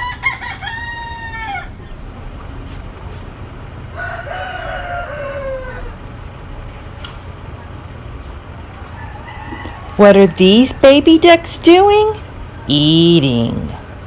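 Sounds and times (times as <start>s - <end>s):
rooster crowing: 0.0s - 1.9s, 3.8s - 6.3s, 8.6s - 10.3s
steady low hum: 0.0s - 14.0s.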